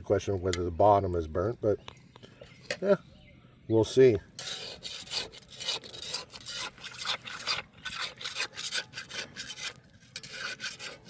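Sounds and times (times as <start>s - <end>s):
utensil scraping pot bottom: 4.4s - 11.0s.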